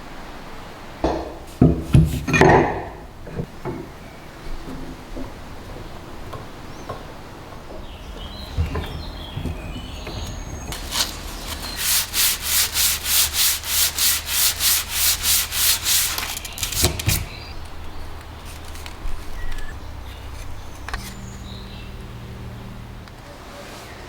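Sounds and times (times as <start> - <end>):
light knocks and handling: 6.3 - 23.3
hand sanding with sandpaper: 8.2 - 19.4.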